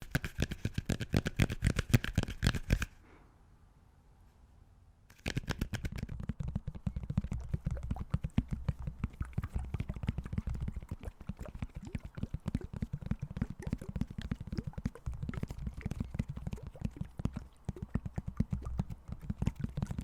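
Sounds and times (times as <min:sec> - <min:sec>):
objects crackling against microphone: 0:05.1 - 0:20.0.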